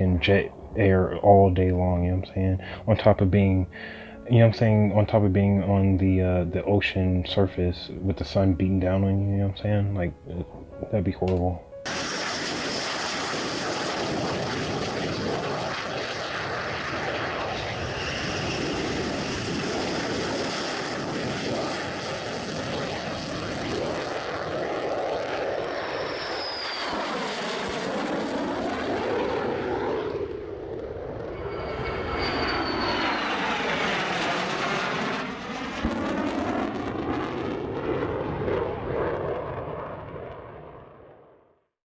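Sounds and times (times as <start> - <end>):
military aircraft engines: 0.0 - 3.1, 11.3 - 40.7
aircraft passing overhead: 0.0 - 11.0, 11.7 - 41.1.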